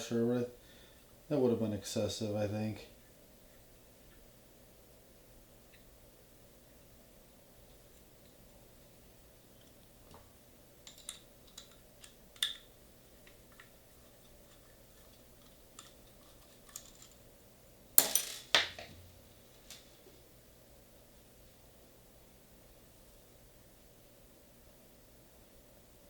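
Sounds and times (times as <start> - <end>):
small hard parts clicking: 10.8 - 17.2.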